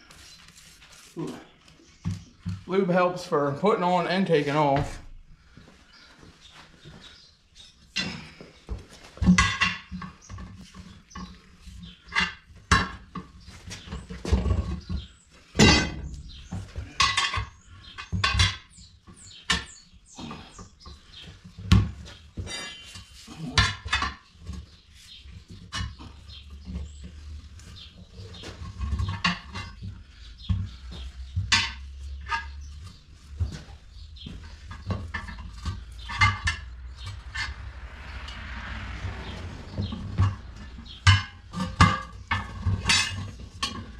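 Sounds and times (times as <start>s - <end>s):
tire irons clanking on wheel rim: 9.2s - 37.6s, 40.9s - 43.9s.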